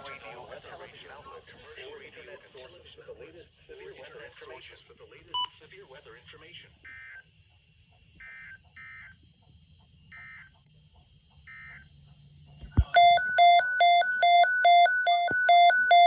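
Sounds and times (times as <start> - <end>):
alert data tone bursts: 12.8 - 16.0
two-pitch electronic alert tone: 12.8 - 16.0.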